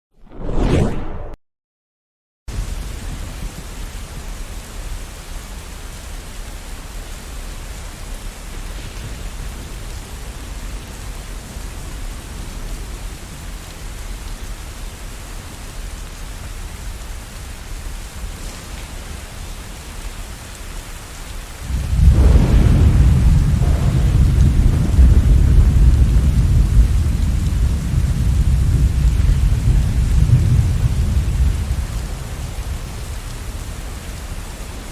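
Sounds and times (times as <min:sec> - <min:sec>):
steady rainfall: 0:02.5 - 0:34.9
thunderclap: 0:21.6 - 0:33.8.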